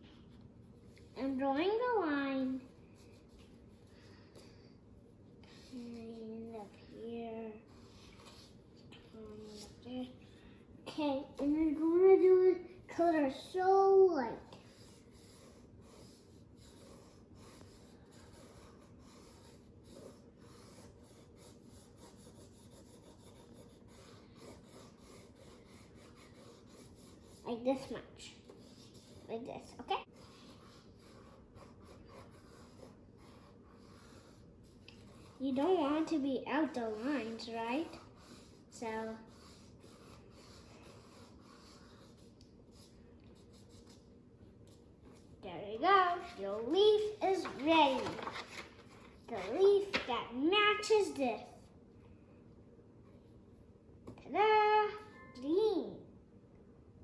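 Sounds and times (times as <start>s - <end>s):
crayon scratching on paper: 1.1s - 3.9s, 5.5s - 10.2s, 14.4s - 44.0s.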